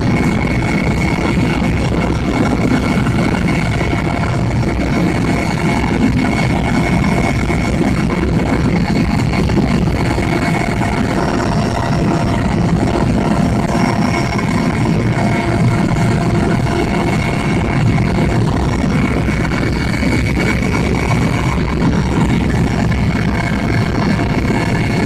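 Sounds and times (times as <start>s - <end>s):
helicopter cabin drone: 0.0s - 25.0s
high whine: 0.0s - 25.0s.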